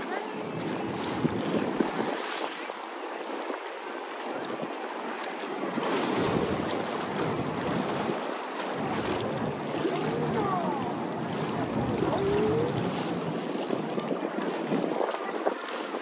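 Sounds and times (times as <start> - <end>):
waves washing in: 0.0 - 16.0
wind buffeting microphone: 0.0 - 16.0
strong wind howling: 8.8 - 15.4.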